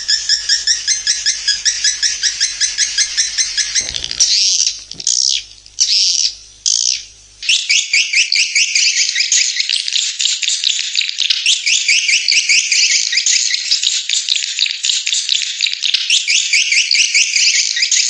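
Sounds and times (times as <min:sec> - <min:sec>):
recorded bird twittering: 0:00.0 - 0:07.6.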